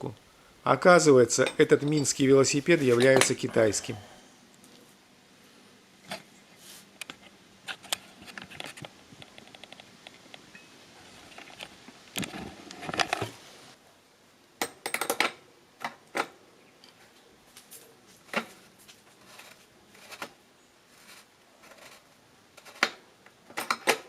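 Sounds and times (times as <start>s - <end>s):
rustling scrape of metal parts: 18.2s - 23.0s.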